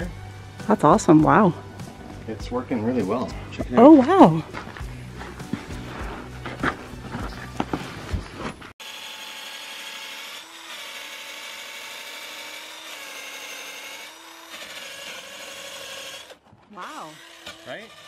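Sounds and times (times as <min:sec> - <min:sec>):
power grinder whining: 0:08.8 - 0:18.0.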